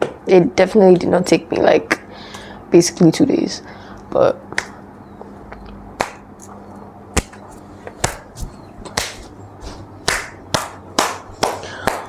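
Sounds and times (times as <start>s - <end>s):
faint steady hum: 0.0s - 12.0s
sharp smacks: 6.0s - 6.2s, 7.2s - 7.4s, 8.0s - 9.3s, 10.1s - 12.0s.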